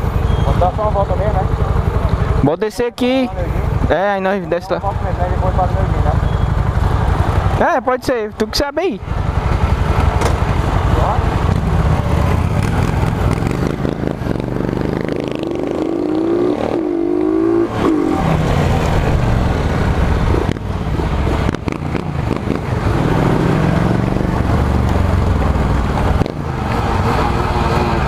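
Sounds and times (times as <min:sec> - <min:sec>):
motorcycle engine revving: 0:09.0 - 0:28.0.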